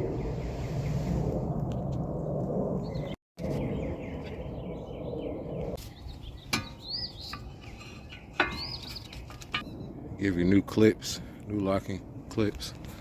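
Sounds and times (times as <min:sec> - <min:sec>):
low outdoor rumble: 0:00.0 - 0:13.0
birds chirping faintly: 0:02.8 - 0:10.0.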